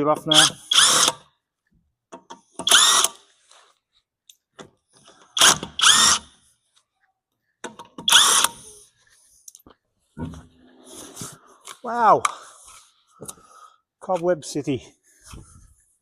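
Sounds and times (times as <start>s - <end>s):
power tool motor whirring: 2.6s - 3.2s, 5.4s - 6.3s, 8.1s - 8.6s.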